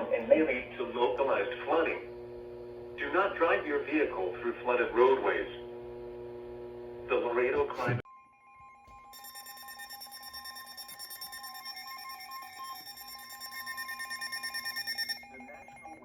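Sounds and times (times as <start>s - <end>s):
fast-pulsing electronic alarm: 9.1s - 16.0s
steady warning alarm tone: 9.1s - 16.0s.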